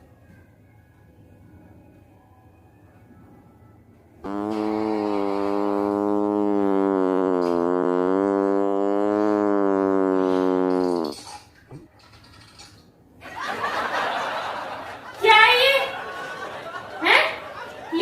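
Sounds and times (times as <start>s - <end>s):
long buzzing fart noise: 4.2s - 11.4s.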